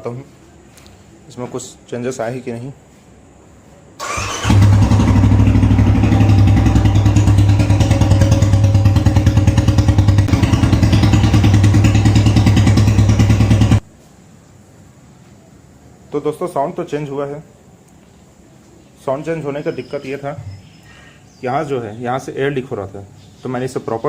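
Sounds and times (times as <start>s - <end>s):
motorcycle engine cranking: 4.0s - 13.8s
motorcycle engine idling: 4.0s - 13.8s.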